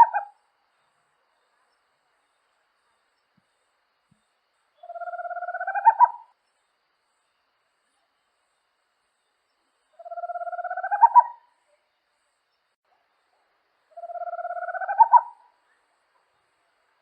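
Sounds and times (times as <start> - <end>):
owl trilling call: 0.0 - 0.4, 4.8 - 6.3, 10.0 - 11.5, 13.9 - 15.5.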